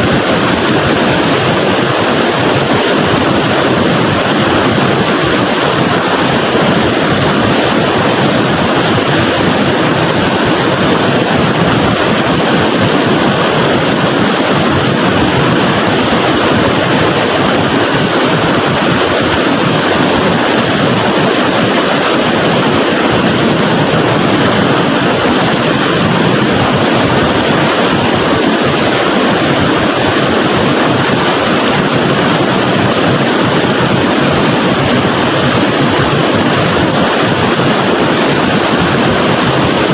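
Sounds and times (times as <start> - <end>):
floodwater rushing: 0.0 - 39.9.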